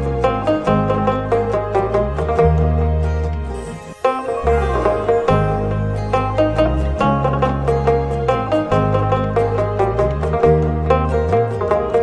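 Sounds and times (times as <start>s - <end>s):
steady bass: 0.0s - 3.8s, 4.4s - 12.0s
plucked strings music: 0.0s - 12.0s.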